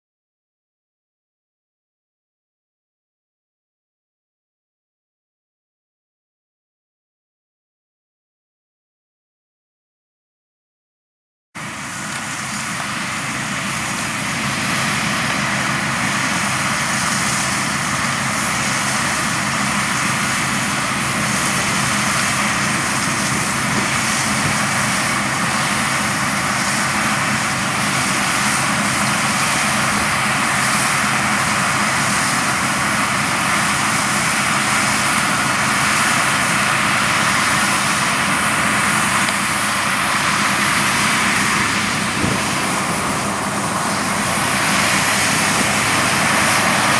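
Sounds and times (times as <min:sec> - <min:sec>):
combine harvester engine drone: 0:11.6 - 0:46.9
continuous mechanical rush: 0:11.6 - 0:46.9.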